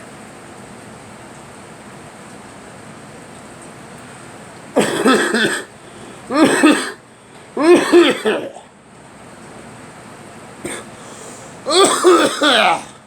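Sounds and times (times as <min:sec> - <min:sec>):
person coughing: 0:04.8 - 0:05.7, 0:06.3 - 0:07.0, 0:07.6 - 0:08.7, 0:10.7 - 0:10.9, 0:11.7 - 0:13.0.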